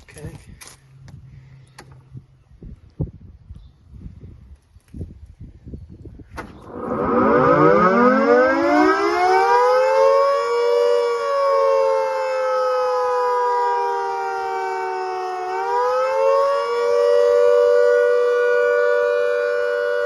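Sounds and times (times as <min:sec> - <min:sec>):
air raid siren wailing: 0:06.6 - 0:20.0.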